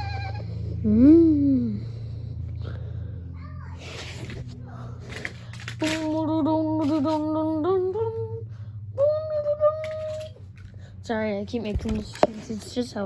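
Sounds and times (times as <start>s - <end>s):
child humming a wavering note: 0.0s - 2.1s.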